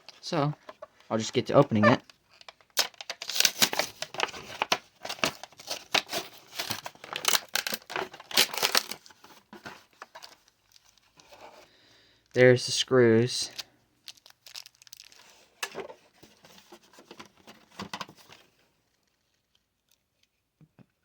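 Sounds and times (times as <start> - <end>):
packaging crinkling and tearing: 2.0 - 11.4, 13.5 - 15.7.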